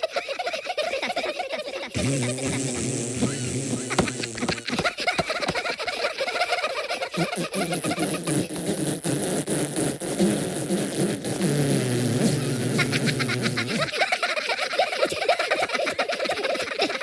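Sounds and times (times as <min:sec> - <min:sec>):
cartoon fart sound effect: 0:01.9 - 0:05.6, 0:07.1 - 0:13.9.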